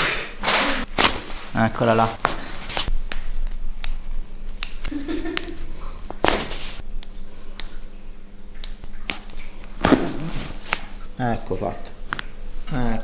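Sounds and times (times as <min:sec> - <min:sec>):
loud spinal pop: 0:09.8 - 0:10.9.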